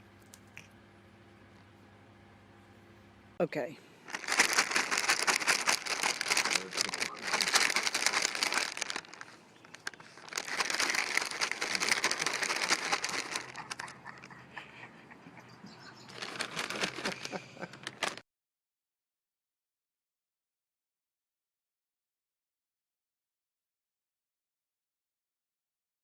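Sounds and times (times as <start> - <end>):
crinkling crackling noise: 4.1 - 14.4, 16.0 - 18.2.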